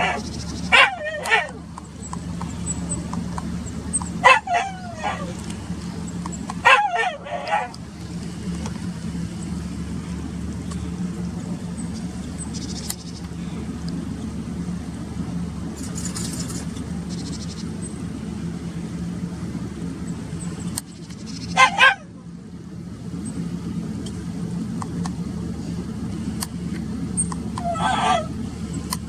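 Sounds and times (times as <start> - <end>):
loud bird calls: 0.0 - 7.8, 10.8 - 14.4, 15.7 - 18.1, 20.0 - 22.0, 27.2 - 28.9
small birds twittering: 0.0 - 8.0, 8.8 - 14.7, 15.6 - 19.0, 20.0 - 21.9, 26.4 - 29.0
car engine idling: 0.0 - 29.0.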